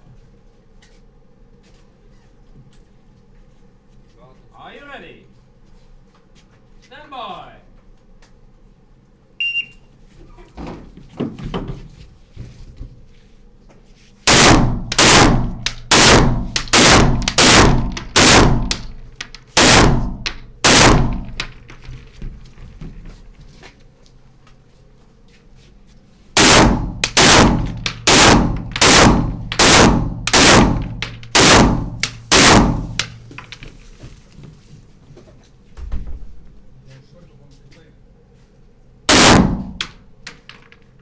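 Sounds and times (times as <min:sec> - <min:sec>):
semi-automatic rifle fire: 0:14.3 - 0:21.6, 0:26.4 - 0:33.2, 0:39.1 - 0:40.0.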